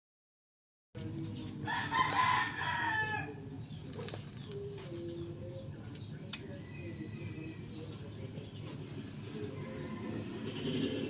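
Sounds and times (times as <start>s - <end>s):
rooster crowing: 1.6s - 3.4s, 9.5s - 11.0s.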